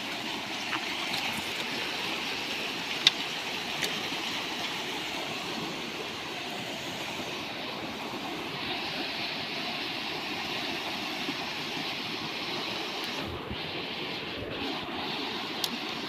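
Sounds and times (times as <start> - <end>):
flowing brook: 0.0 - 16.0.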